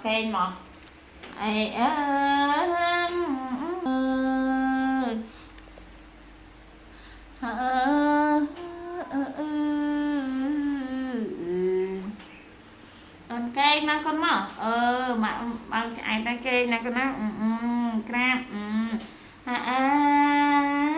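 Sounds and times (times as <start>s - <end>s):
woman humming: 1.4s - 5.3s, 7.4s - 12.3s, 14.6s - 20.9s.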